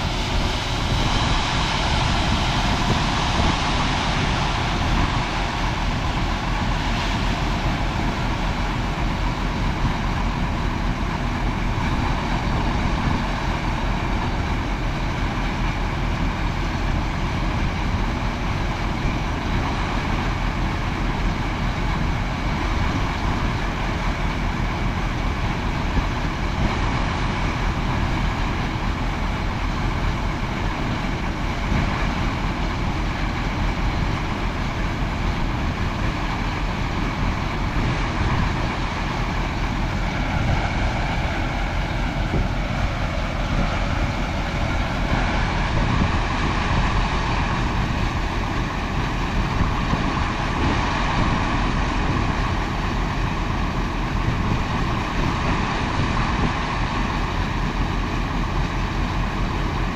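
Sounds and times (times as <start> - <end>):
farm machinery engine drone: 0.0 - 59.9.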